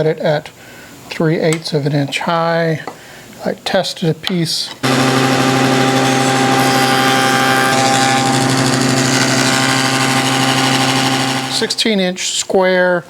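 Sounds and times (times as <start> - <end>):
table saw running: 4.8 - 11.9.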